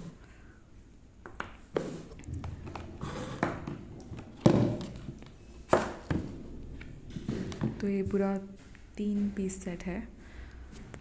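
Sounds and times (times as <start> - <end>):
plastic parts knocking: 1.2 - 8.1.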